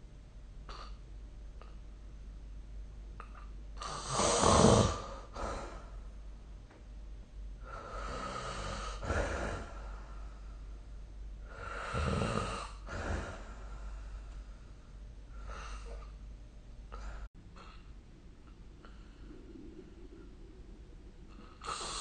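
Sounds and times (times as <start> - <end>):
person snoring: 3.2 - 6.0, 7.6 - 10.3, 11.5 - 14.2, 18.8 - 22.0.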